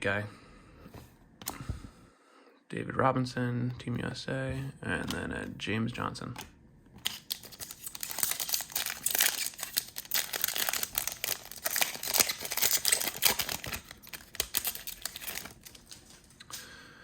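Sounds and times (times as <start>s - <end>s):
wrapper tearing and crinkling: 7.0s - 16.4s.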